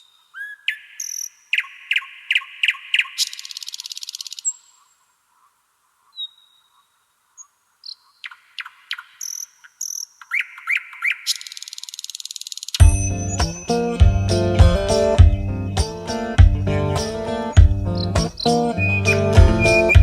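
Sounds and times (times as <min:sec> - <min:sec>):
insect trill: 0:11.3 - 0:15.2
bird chirps and whistles: 0:18.4 - 0:20.0.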